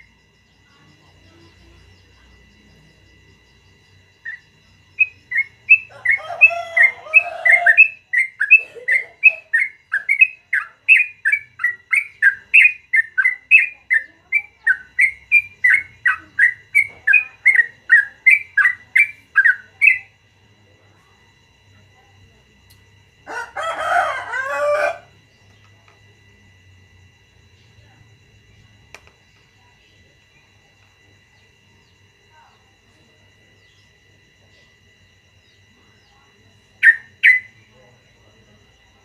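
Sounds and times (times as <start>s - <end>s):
bird chirping song: 3.4s - 20.1s, 33.4s - 34.7s, 35.4s - 37.9s.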